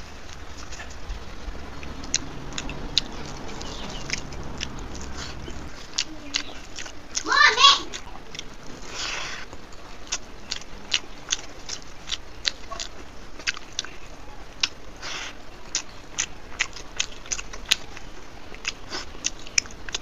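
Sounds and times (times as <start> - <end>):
wet chewing mouth clicks: 7.9 - 20.0.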